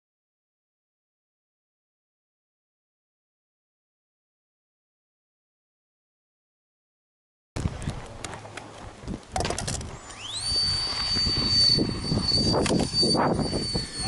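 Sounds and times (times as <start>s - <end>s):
model plane fan whine: 7.7s - 14.0s.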